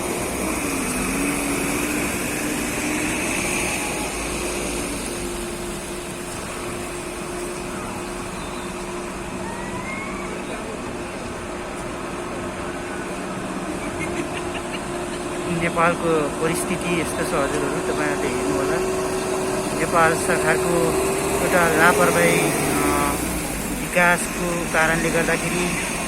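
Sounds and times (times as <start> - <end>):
constant rushing noise: 0.0 - 26.0
vehicle engine running: 10.4 - 26.0.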